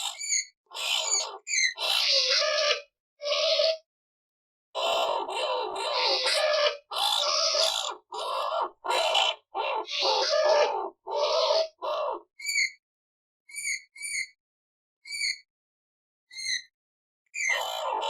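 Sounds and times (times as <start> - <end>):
skunk rasping squeals: 0.0 - 3.8, 4.8 - 12.8, 13.5 - 14.4, 15.0 - 15.4, 16.3 - 16.7, 17.4 - 18.0.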